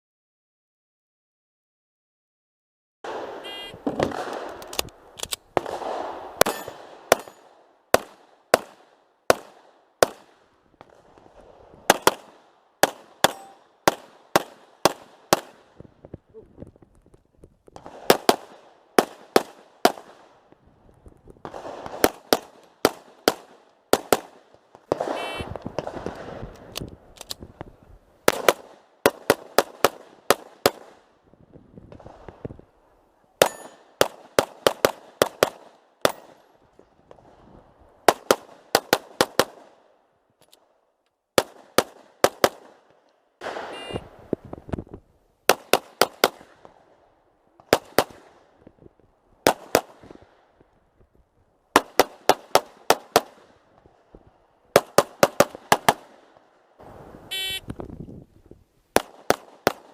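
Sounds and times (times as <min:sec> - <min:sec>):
pistol shots: 0:03.1 - 0:04.6, 0:05.6 - 0:10.3, 0:11.9 - 0:15.6.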